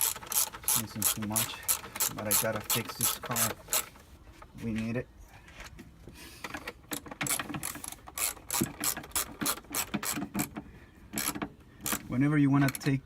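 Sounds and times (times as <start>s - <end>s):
ratchet wrench clicking: 0.0s - 3.9s, 11.2s - 12.0s.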